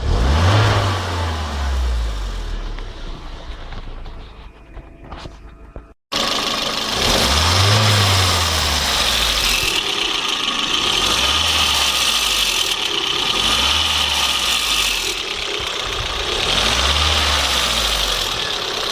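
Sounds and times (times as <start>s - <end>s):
car engine revving: 0.0s - 4.5s, 6.2s - 18.9s.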